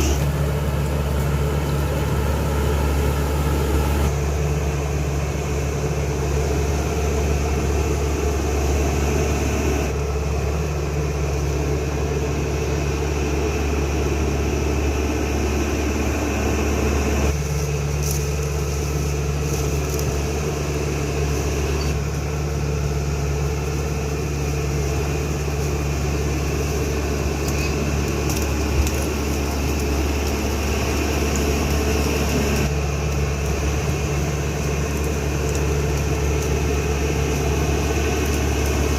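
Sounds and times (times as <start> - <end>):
bulldozer diesel engine running: 0.0 - 38.9.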